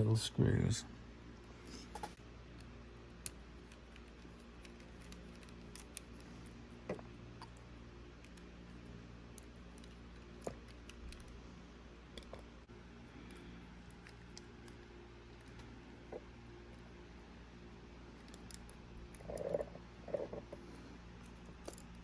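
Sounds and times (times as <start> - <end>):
steady low hum: 0.0 - 22.0
small metal parts clicking: 1.9 - 6.3, 18.1 - 19.6, 21.2 - 22.0.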